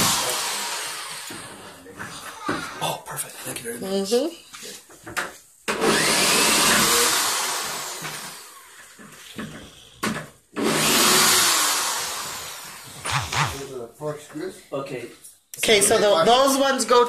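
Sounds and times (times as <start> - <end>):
power drill running: 0.0 - 1.7, 5.8 - 8.8, 10.6 - 13.7.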